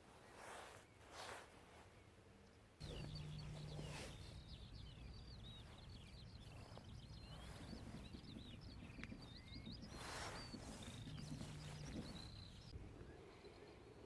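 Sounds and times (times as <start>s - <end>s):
small birds twittering: 2.0s - 14.0s
low background rumble: 2.8s - 13.3s.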